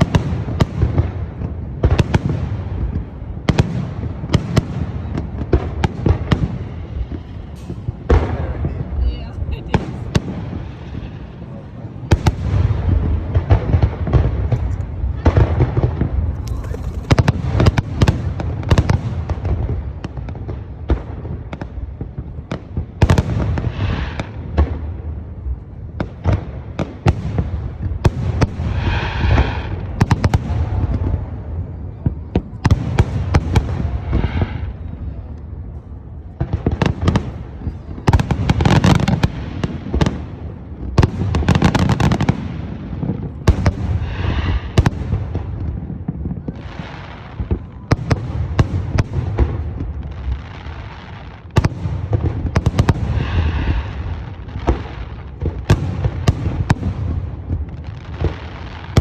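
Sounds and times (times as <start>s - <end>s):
fireworks bangs and booms: 0.0s - 59.0s
crackling firework bursts: 12.1s - 31.5s, 36.5s - 59.0s.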